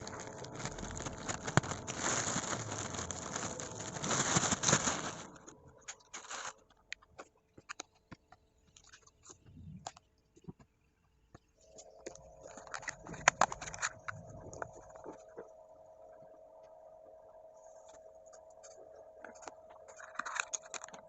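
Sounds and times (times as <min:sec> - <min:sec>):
plastic packaging crinkling: 0:00.0 - 0:08.0, 0:11.9 - 0:15.3, 0:19.3 - 0:21.0.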